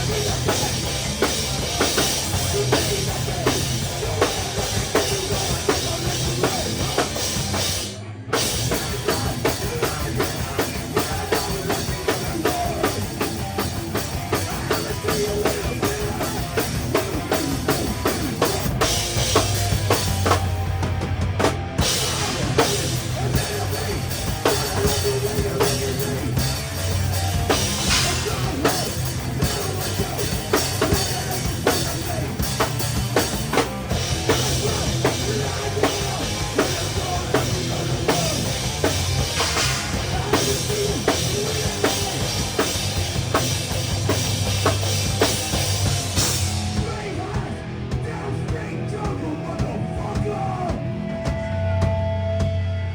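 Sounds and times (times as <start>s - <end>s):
drum kit: 0.0s - 52.9s
live rock band playing: 0.0s - 52.9s.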